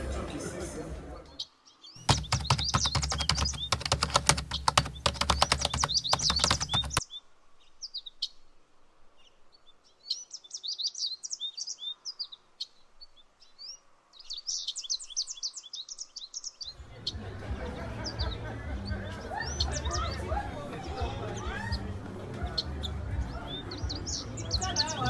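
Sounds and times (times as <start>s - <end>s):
small birds chirping: 1.2s - 25.0s
rapid sharp clicks: 2.0s - 7.0s.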